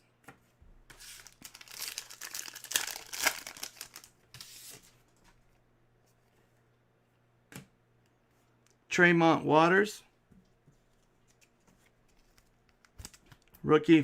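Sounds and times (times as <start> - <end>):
plastic wrapper crinkling: 1.0 - 4.1.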